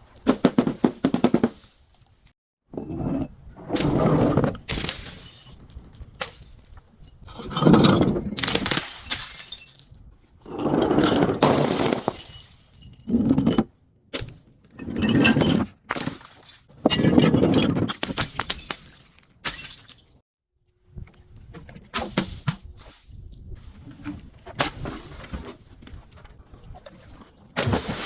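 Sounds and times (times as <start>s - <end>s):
glass bottles shattering: 4.7s - 6.8s, 8.4s - 10.0s, 11.4s - 13.1s, 17.9s - 20.2s.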